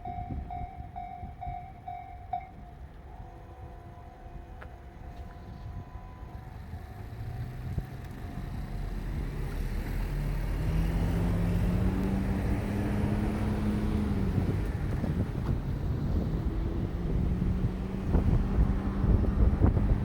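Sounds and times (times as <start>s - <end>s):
level-crossing bell ringing: 0.0s - 7.2s
diesel railcar engine: 0.0s - 20.0s.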